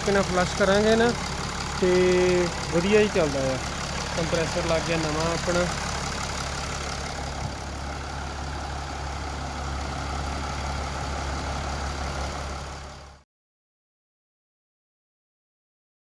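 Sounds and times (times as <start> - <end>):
car engine idling: 0.0 - 13.2.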